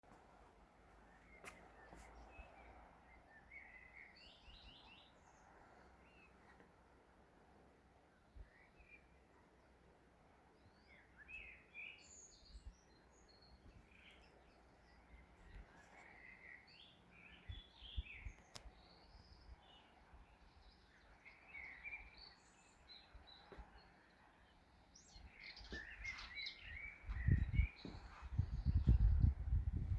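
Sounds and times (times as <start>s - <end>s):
birds chirping: 10.5s - 29.9s.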